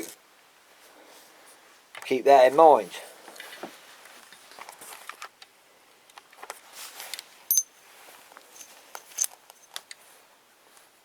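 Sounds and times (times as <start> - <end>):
light clicks and rustles: 3.2 - 5.5, 8.1 - 10.1
ringing metallic clink: 7.5 - 7.8.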